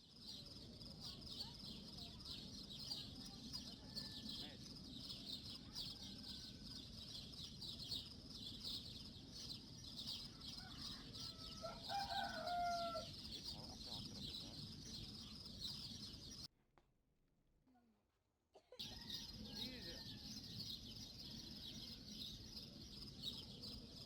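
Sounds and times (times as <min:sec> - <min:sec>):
rooster crowing: 0:10.3 - 0:13.2, 0:18.8 - 0:20.6.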